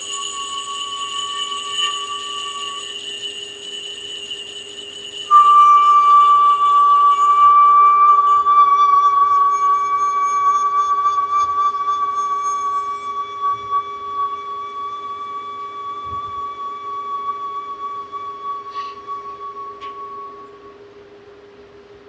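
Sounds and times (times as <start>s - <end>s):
singing bowl ringing: 0.0s - 20.8s.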